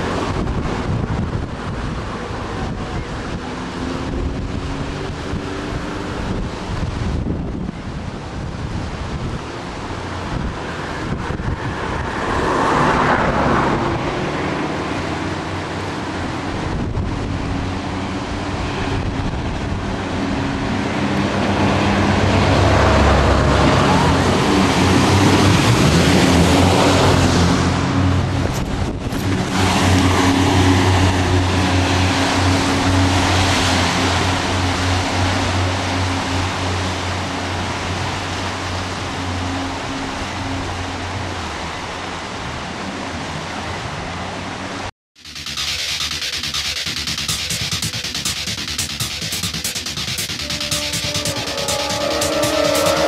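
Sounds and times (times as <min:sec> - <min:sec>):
wind buffeting microphone: 0:00.0 - 0:14.6, 0:16.1 - 0:41.4
boat engine drone: 0:00.0 - 0:53.0
rush of water spray: 0:00.0 - 0:53.0.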